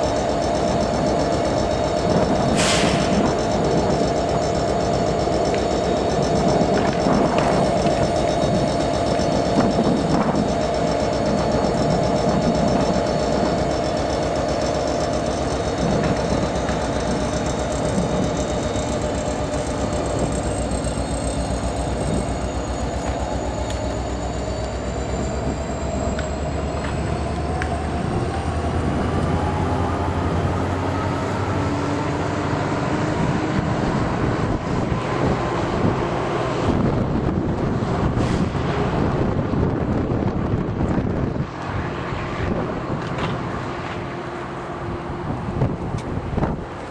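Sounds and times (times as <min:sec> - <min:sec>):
high squealing train wheels: 0:00.0 - 0:46.9
rumble of railcars on track: 0:00.0 - 0:46.9.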